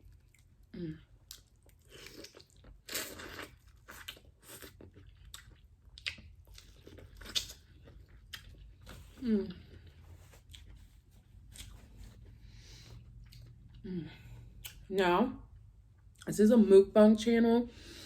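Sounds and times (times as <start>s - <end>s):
crunchy chewing and biting: 1.3s - 13.8s.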